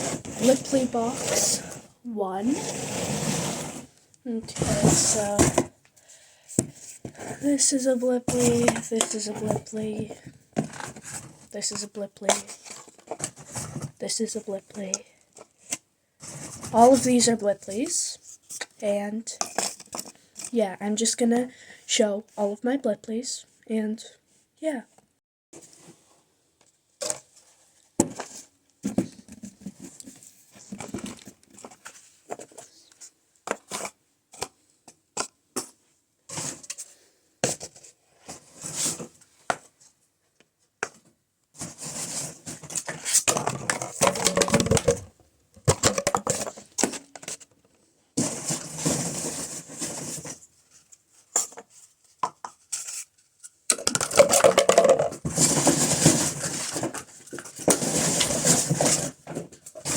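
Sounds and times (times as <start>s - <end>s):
rustling and rummaging: 0.0s - 20.8s, 25.6s - 59.9s.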